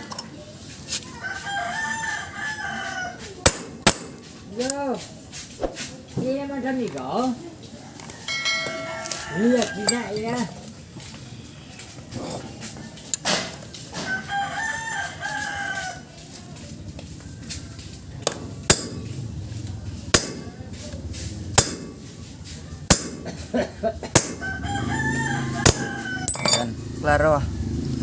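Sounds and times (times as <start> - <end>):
rooster crowing: 1.2 - 3.4, 8.0 - 10.7, 14.0 - 16.2, 24.4 - 26.8.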